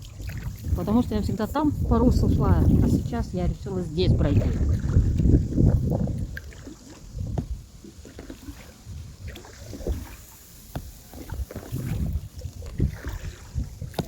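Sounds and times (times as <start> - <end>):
paddle strokes splashing: 0.0 - 14.0
wind buffeting microphone: 0.0 - 14.0
light knocks against hull: 4.4 - 8.4, 10.7 - 14.0.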